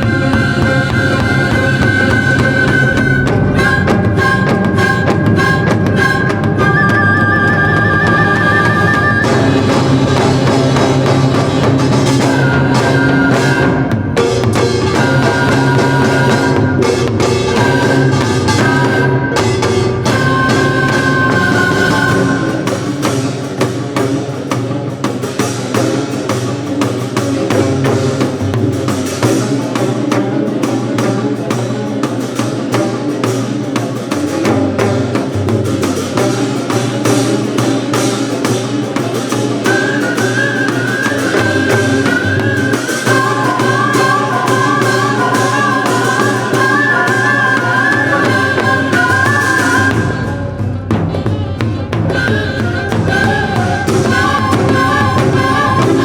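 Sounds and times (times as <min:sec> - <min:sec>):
high held melody line: 0:00.0 - 0:10.1
fast dense percussion: 0:00.0 - 0:56.0
traditional orchestra playing: 0:00.0 - 0:56.0.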